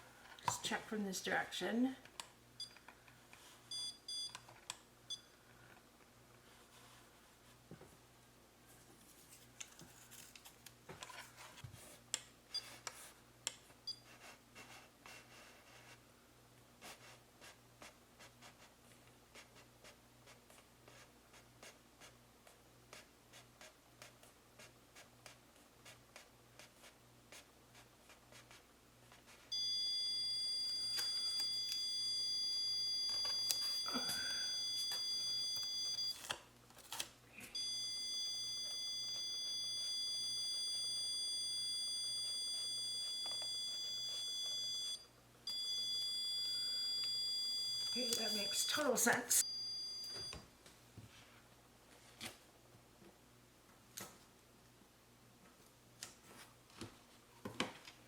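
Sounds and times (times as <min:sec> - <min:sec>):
stud finder high-pitched beep: 0:03.7 - 0:04.4, 0:29.5 - 0:36.2, 0:37.6 - 0:50.4.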